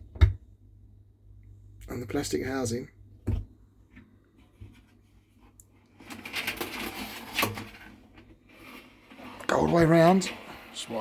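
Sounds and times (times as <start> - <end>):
cable tie scraping and rustling: 4.4 - 11.0.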